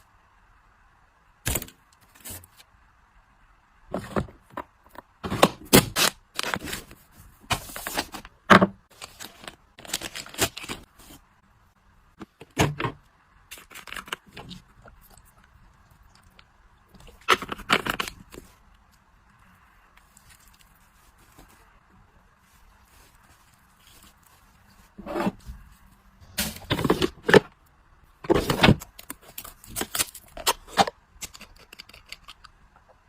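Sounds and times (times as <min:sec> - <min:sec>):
rustling and scraping of packaging: 0:03.9 - 0:11.3, 0:12.1 - 0:14.8, 0:20.0 - 0:27.5, 0:28.2 - 0:31.0.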